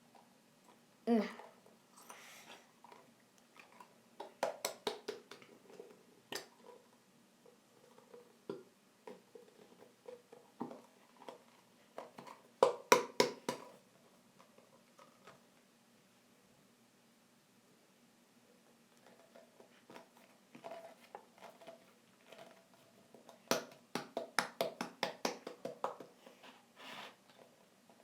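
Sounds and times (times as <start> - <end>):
clicks and taps of small objects: 3.4 - 6.8, 8.0 - 13.8, 23.2 - 26.4.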